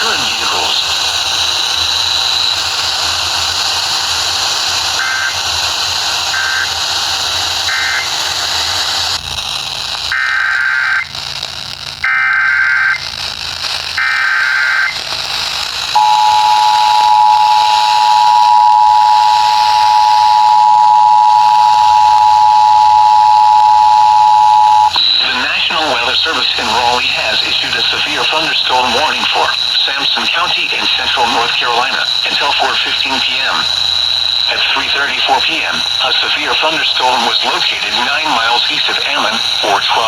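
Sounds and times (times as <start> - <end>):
digital data bursts: 0.0 - 8.8, 11.9 - 40.0
radio static hiss: 0.0 - 40.0
short beeps: 16.0 - 25.3
two-tone attention signal: 16.0 - 25.3.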